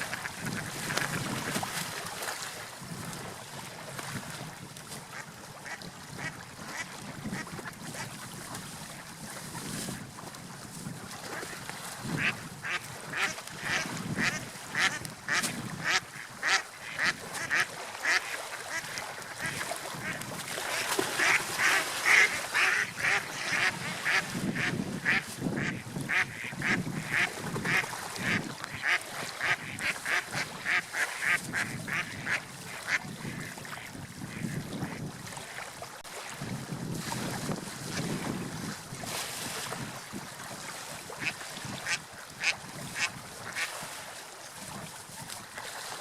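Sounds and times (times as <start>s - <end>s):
flock of waterfowl calling: 12.2s - 34.6s.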